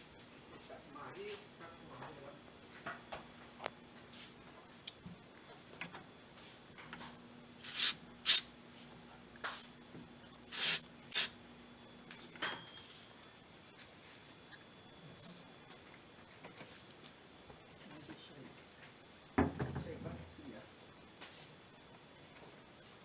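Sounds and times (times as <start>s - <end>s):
aerosol spray can hissing: 7.6s - 8.5s, 10.5s - 11.3s.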